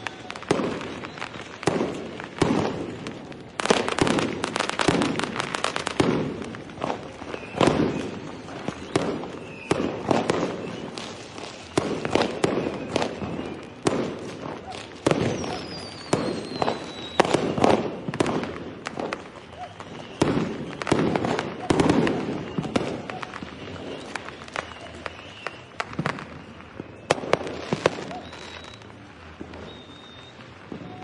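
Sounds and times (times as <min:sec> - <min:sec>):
falling whistle: 0:00.0 - 0:01.6, 0:07.1 - 0:13.9, 0:14.6 - 0:18.2, 0:19.1 - 0:31.0
firecrackers crackling: 0:00.0 - 0:31.0
fireworks bangs: 0:00.0 - 0:31.0.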